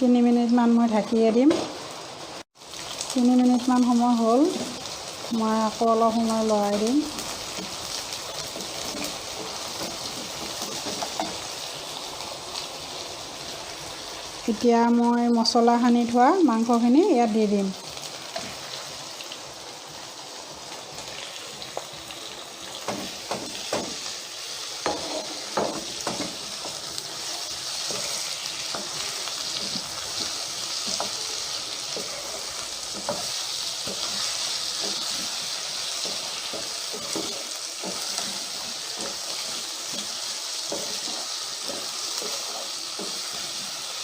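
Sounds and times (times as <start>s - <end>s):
chicken sizzling in hot oil: 0.0s - 44.0s
spoon knocking and scraping pan: 7.5s - 11.6s, 22.7s - 24.1s, 24.8s - 44.0s.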